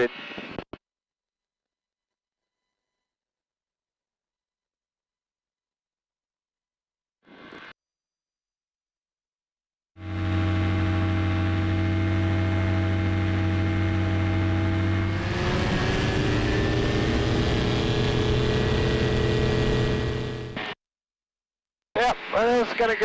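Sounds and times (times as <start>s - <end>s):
aircraft engine droning: 10.0s - 20.6s.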